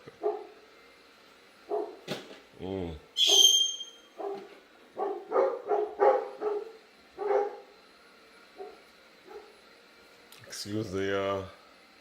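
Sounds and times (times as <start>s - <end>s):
dog barking: 0.2s - 0.6s, 1.7s - 2.0s, 3.2s - 3.6s, 4.2s - 7.7s, 8.6s - 9.5s.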